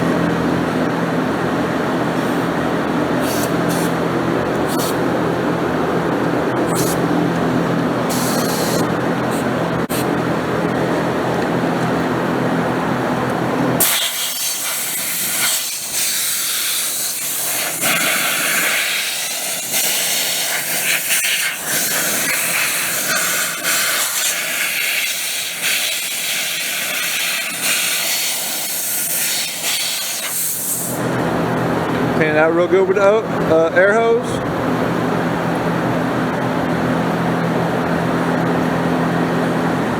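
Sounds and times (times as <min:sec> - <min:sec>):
low machine hum: 0:00.0 - 0:13.8, 0:30.6 - 0:39.9
compressed air hose hissing: 0:03.2 - 0:04.0, 0:04.7 - 0:05.0, 0:06.7 - 0:07.0, 0:08.1 - 0:10.0, 0:13.8 - 0:31.0.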